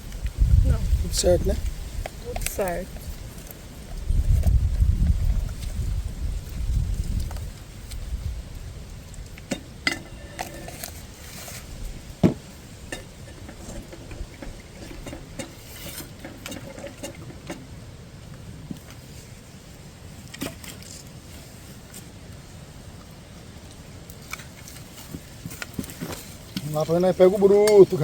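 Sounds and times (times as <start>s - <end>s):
pots and utensils clinking: 9.5s - 10.9s.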